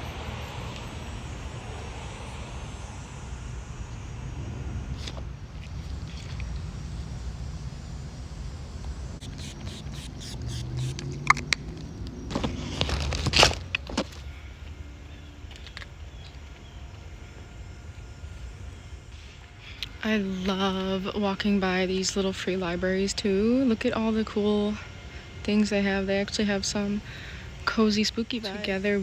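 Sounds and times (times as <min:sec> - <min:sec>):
vehicle passing: 0:00.0 - 0:19.5
low traffic rumble: 0:00.0 - 0:29.0.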